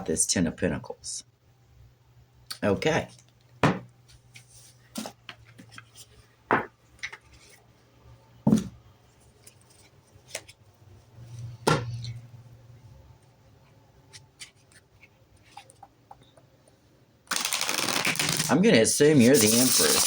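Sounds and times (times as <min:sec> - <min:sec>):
cards rustling and ticking: 0:17.3 - 0:18.6, 0:19.2 - 0:20.0.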